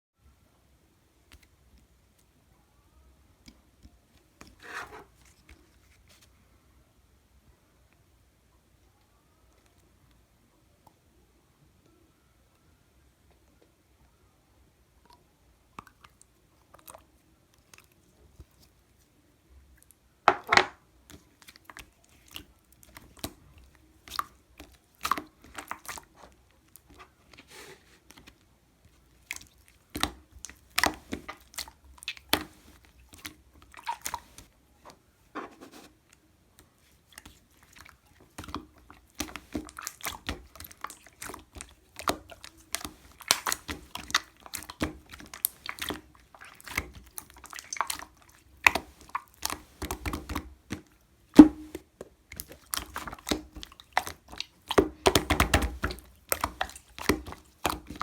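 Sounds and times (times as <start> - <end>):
slime squished by hand: 29.2 - 34.5, 36.8 - 58.0
wet clicks and pops: 29.3 - 34.5, 37.1 - 58.0.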